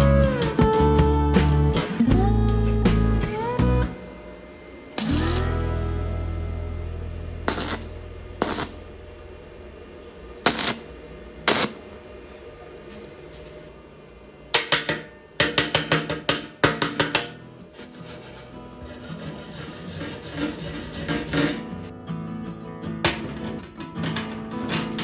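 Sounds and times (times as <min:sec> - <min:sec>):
low hum: 0:00.0 - 0:12.1.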